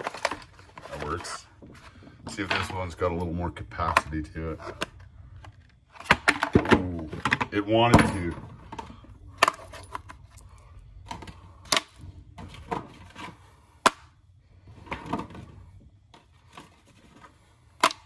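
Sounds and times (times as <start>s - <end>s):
metal tools clacking in plastic bin: 0.0s - 1.4s.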